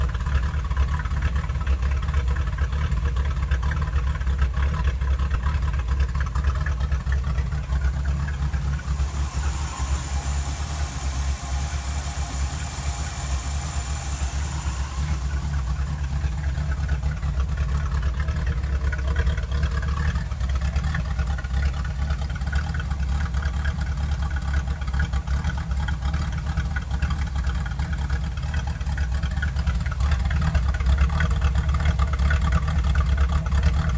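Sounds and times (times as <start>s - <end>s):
engine idling roughly: 0.0s - 33.9s
high hiss: 8.2s - 16.8s.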